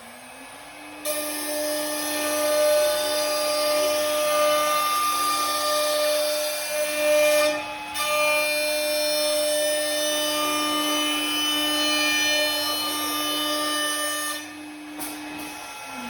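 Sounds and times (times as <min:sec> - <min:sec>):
machine motor whine: 0:00.0 - 0:16.0.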